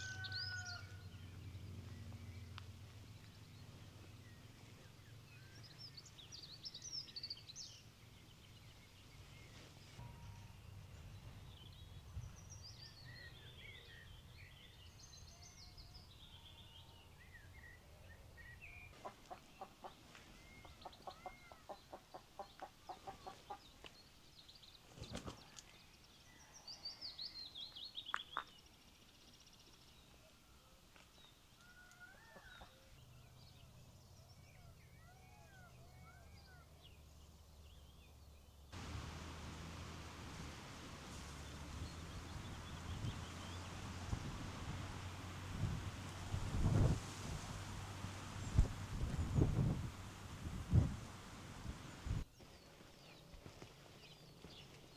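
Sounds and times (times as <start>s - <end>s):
birds singing trilled songs: 32.2s - 53.2s
faint low hum: 38.8s - 52.2s
rapid clucking bird calls: 38.8s - 52.2s.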